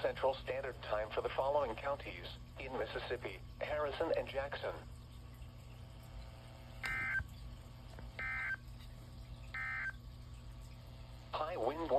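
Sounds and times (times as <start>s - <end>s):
buzzing digital data tones: 6.8s - 7.2s, 8.2s - 8.6s, 9.5s - 10.0s.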